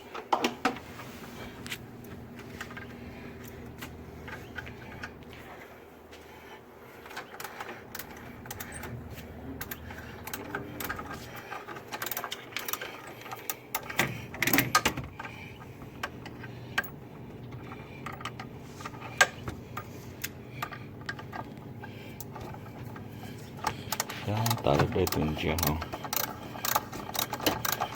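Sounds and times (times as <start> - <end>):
hand tools clicking against metal: 9.6 - 27.9.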